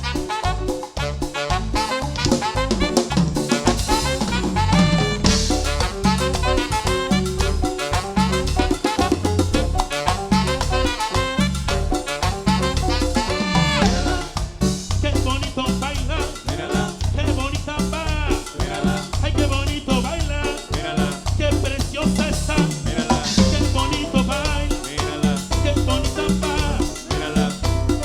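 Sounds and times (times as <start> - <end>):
live band playing latin dance music: 0.0 - 28.0.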